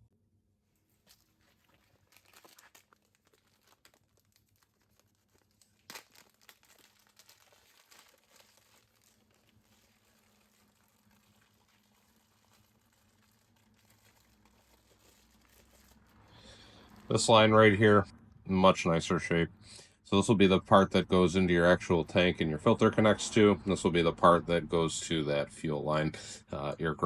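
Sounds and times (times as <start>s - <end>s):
plastic packaging crinkling: 0.7s - 17.5s.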